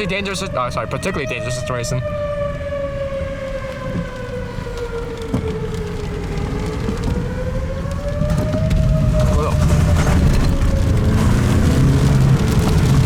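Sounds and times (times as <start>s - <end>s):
warning siren wailing: 0.0s - 13.0s
low rumble: 7.9s - 13.0s.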